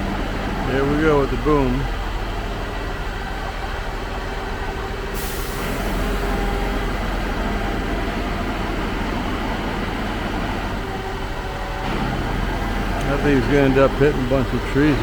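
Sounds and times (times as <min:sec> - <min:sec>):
truck engine running: 0:00.0 - 0:15.0
hiss: 0:05.1 - 0:06.6.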